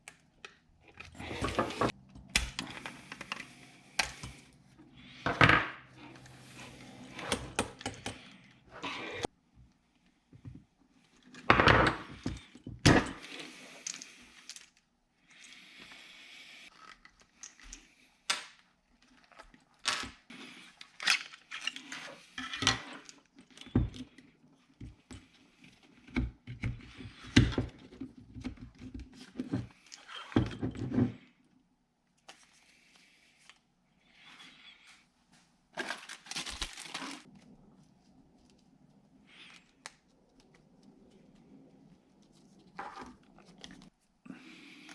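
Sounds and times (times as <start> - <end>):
rustling and scraping: 0.8 - 9.3, 32.2 - 44.9.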